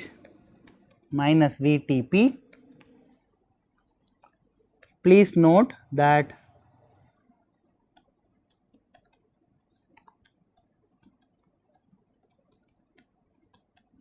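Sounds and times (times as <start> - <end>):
faint small clicks and taps: 0.1 - 1.2, 3.8 - 5.0, 7.5 - 14.0.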